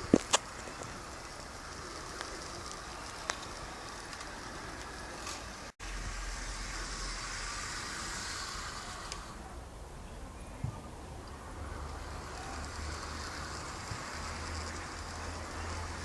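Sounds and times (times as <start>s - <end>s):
model train rumbling on track: 0.0s - 9.7s, 10.9s - 16.0s
faint clicks: 0.1s - 5.5s, 8.8s - 9.3s.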